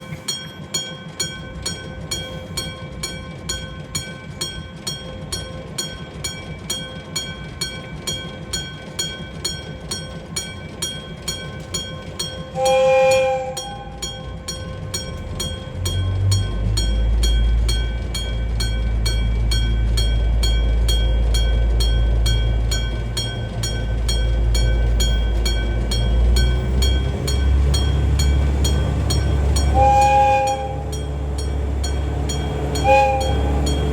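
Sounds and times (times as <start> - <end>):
train rumble: 0.0 - 33.9
train horn: 12.5 - 14.2, 29.5 - 31.3, 32.6 - 33.9.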